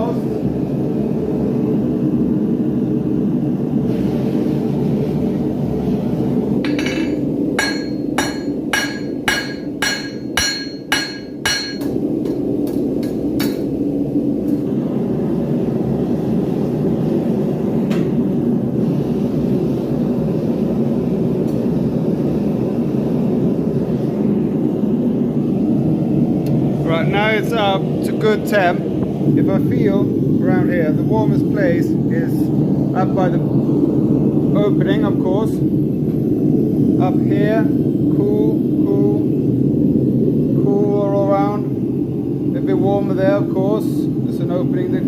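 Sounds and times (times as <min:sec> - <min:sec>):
gas forge burners roaring: 0:00.0 - 0:45.0
hammer blows on metal: 0:06.6 - 0:13.7.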